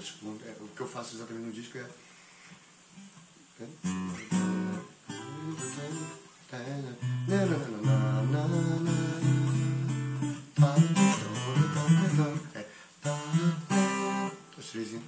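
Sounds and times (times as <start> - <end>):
acoustic guitar melody: 3.8 - 15.0.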